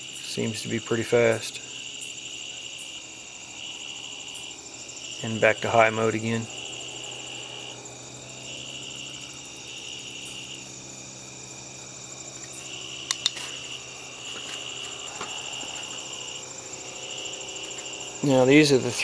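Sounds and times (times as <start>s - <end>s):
crickets trilling: 0.0s - 19.0s
sharp clicks: 13.1s - 13.5s.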